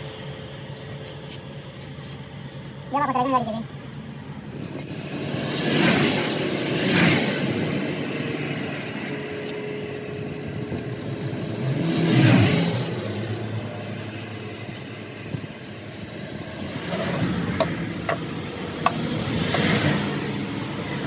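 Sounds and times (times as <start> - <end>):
engine rumble: 0.0 - 21.0
vehicle passing: 4.5 - 21.0.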